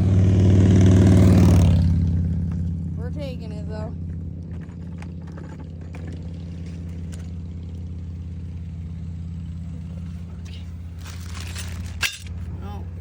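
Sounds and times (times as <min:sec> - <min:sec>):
car engine idling: 0:00.0 - 0:13.0
faint knocks and clatters: 0:04.1 - 0:07.5.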